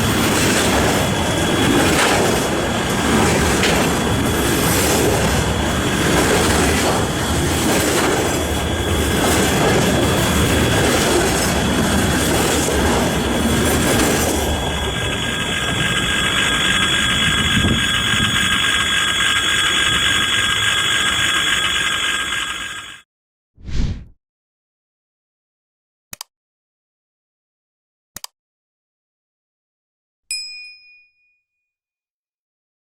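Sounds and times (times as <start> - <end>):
train wheels rumbling on rails: 0.0 - 23.0
train wheels squealing: 0.0 - 23.0.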